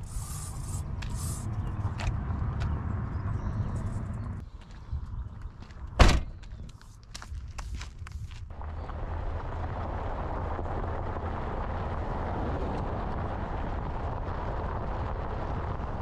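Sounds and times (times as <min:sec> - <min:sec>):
car road and engine rumble: 0:00.0 - 0:16.0
car doors shutting: 0:06.0 - 0:06.4.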